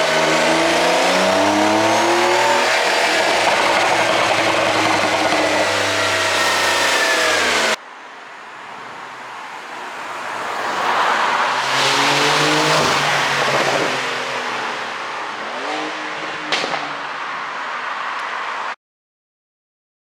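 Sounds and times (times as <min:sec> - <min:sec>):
car engine revving: 0:00.0 - 0:07.8, 0:10.1 - 0:17.3.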